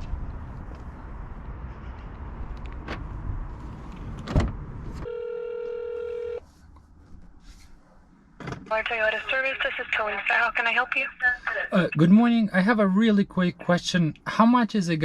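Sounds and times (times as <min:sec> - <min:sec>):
telephone ringback tone: 0:05.0 - 0:06.4.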